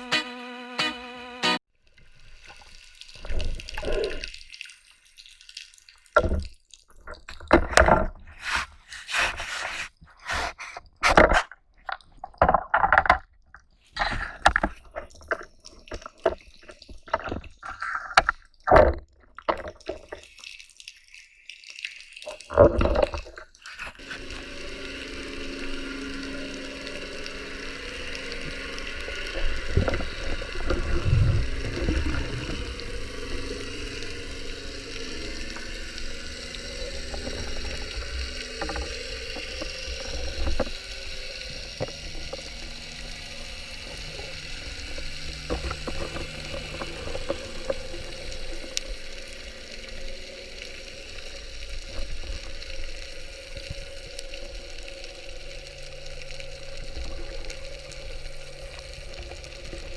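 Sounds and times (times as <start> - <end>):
underwater fizzing crackle: 1.7 - 59.9
water movement bumps and knocks: 6.1 - 9.6, 10.3 - 20.3, 22.3 - 24.3.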